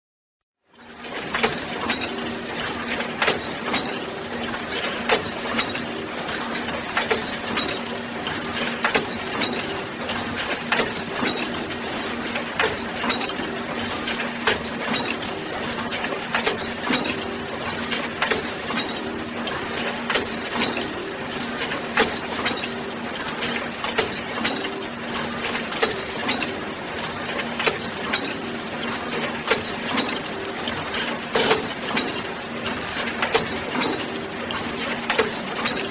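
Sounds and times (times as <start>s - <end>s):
sharp machine clacks: 1.0s - 35.9s
factory machinery running: 1.1s - 35.9s.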